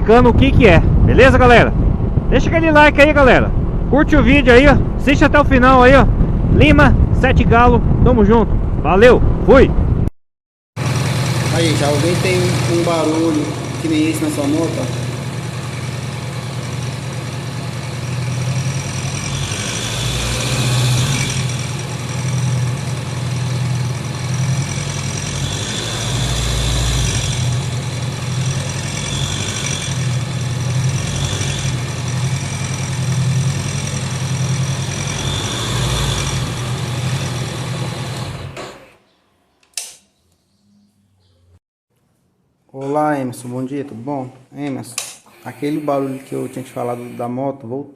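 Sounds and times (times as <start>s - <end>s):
engine knocking noise: 10.8s - 38.6s
motorcycle engine running: 10.8s - 38.6s.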